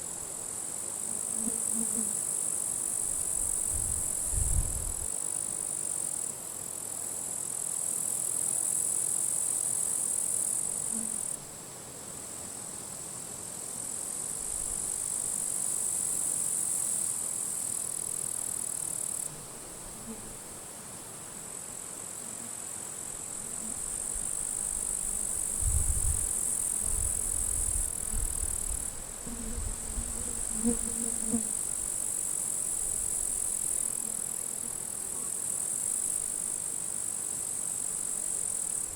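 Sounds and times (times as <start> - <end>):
grasshoppers buzzing: 23.0 - 38.9.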